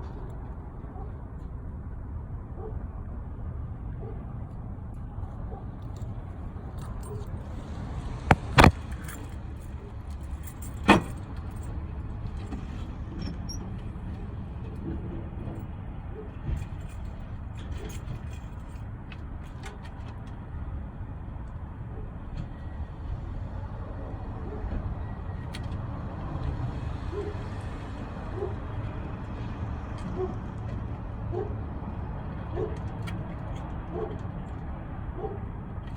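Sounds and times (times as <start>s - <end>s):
car engine rumbling: 4.7s - 11.7s.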